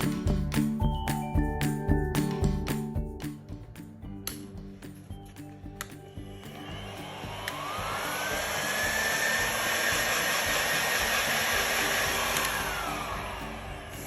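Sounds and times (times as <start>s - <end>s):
heat gun fan whine: 6.5s - 14.0s.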